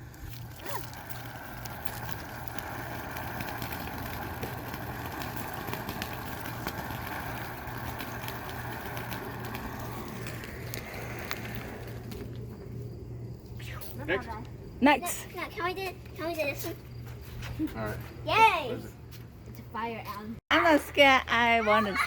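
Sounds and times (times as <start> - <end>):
firework hissing and crackling: 0.0 - 14.4.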